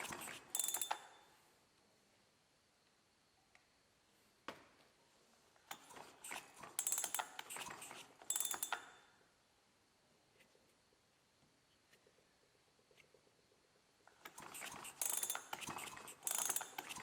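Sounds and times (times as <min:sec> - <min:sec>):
mechanical clicking and rattling: 0:05.7 - 0:09.0, 0:14.1 - 0:17.0.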